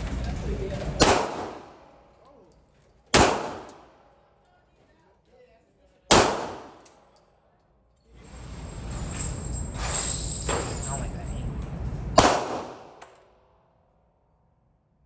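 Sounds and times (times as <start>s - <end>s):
gunshots ringing out: 1.0s - 2.1s, 3.1s - 4.1s, 6.1s - 7.0s, 12.2s - 13.2s.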